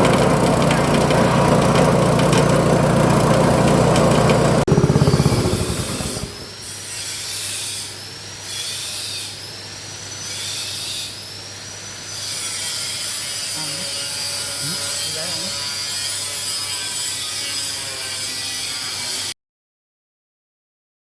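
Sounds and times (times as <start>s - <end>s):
engine winding down: 0.0s - 6.6s
small engine running: 0.0s - 6.7s.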